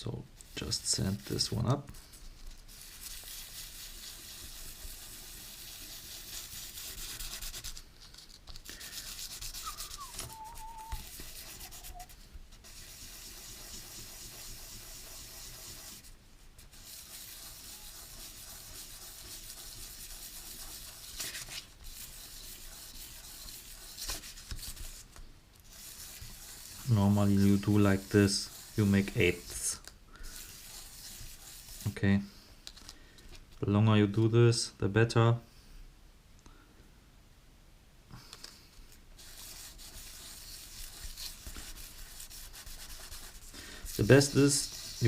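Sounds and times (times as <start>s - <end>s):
metal plate scraping on sandpaper: 25.6s - 31.9s, 39.2s - 45.0s.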